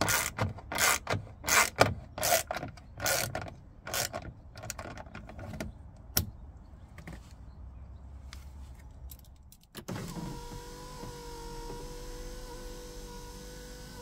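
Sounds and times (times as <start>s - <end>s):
car door parts clicking and rattling: 0.0s - 6.4s.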